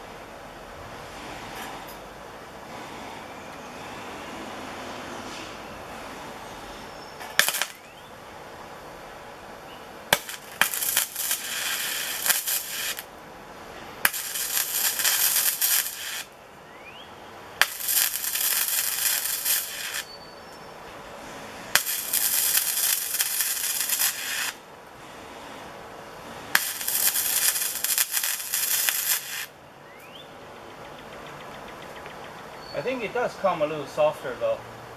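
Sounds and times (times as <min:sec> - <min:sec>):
sharp arc crack: 0:07.2 - 0:08.0, 0:10.1 - 0:13.1, 0:14.0 - 0:16.4, 0:17.6 - 0:20.1, 0:21.7 - 0:24.6, 0:26.5 - 0:29.5
welding arc crackling sizzle: 0:07.2 - 0:08.0, 0:10.0 - 0:16.5, 0:17.4 - 0:29.6.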